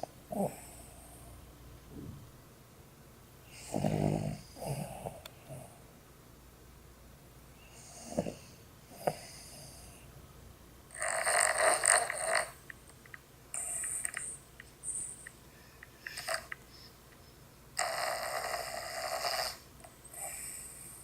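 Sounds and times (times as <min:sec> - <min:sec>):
dog snoring: 0:00.0 - 0:00.9, 0:03.5 - 0:05.8, 0:07.7 - 0:09.9, 0:10.9 - 0:12.6, 0:13.6 - 0:15.0, 0:16.0 - 0:16.6, 0:17.8 - 0:21.0.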